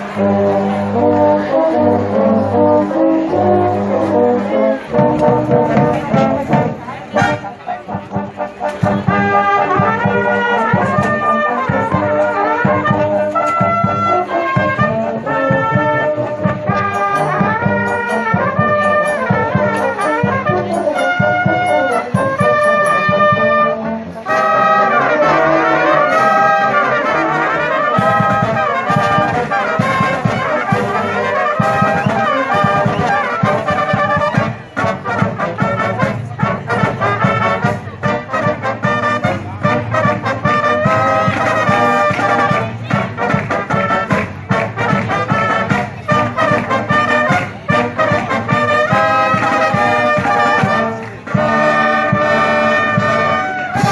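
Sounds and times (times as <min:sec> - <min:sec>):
brass melody: 0:00.0 - 0:53.9
steady drumming: 0:27.9 - 0:53.9.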